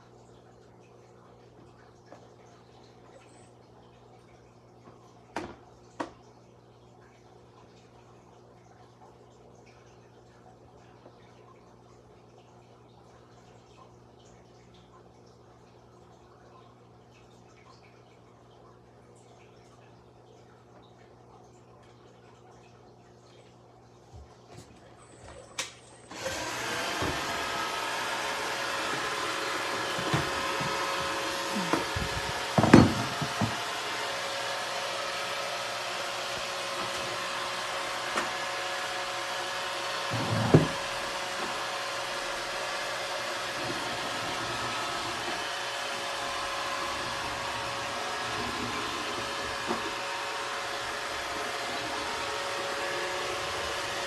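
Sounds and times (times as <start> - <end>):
robot vacuum whirring: 26.1 - 54.0
knocks: 29.8 - 33.6.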